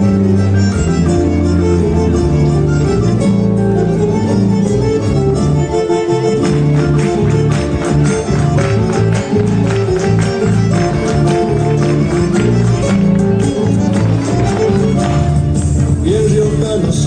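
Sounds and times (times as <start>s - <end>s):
plucked strings: 0.0s - 16.1s
instrumental folk music: 0.0s - 17.0s
hand percussion beat: 6.3s - 16.9s.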